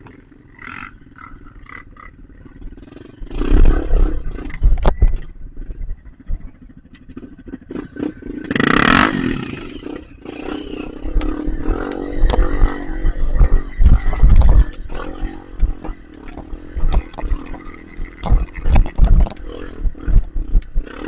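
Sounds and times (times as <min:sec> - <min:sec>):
motorcycle engine revving: 0:00.0 - 0:21.0.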